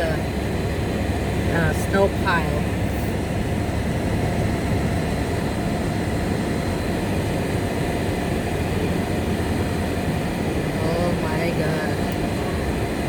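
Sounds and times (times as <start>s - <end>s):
car cabin road noise: 0.0s - 13.0s.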